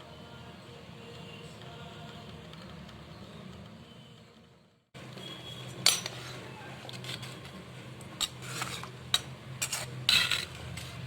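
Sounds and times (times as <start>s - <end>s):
dishes and utensils clinking: 5.8s - 7.5s, 8.1s - 11.0s.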